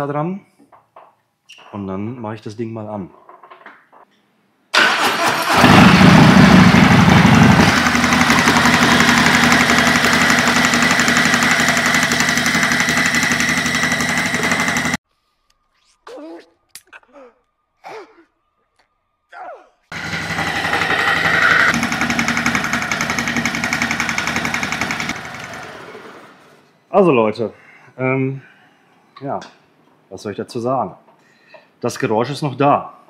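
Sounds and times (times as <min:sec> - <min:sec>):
motorcycle engine starting and idling: 0:04.8 - 0:15.0, 0:19.9 - 0:26.4.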